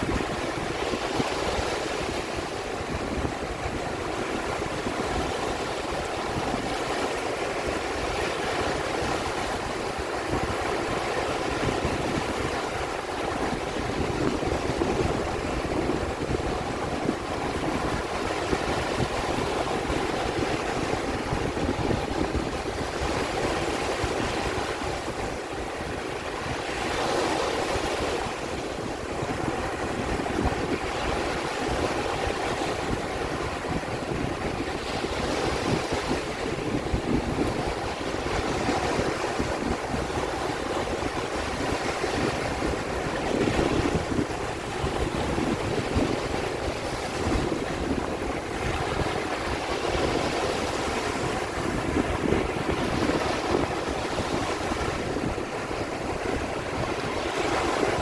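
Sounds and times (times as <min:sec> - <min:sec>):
sea waves washing: 0:00.0 - 0:58.0
wind gusting over microphone: 0:00.0 - 0:58.0.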